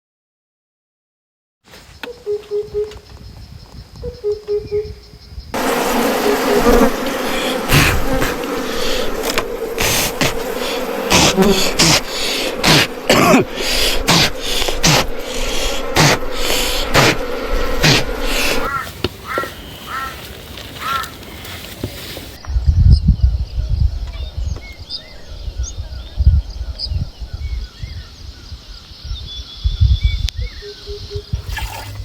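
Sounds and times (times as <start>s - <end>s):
bees buzzing: 5.6s - 20.1s
crackles and knocks: 9.2s - 10.4s.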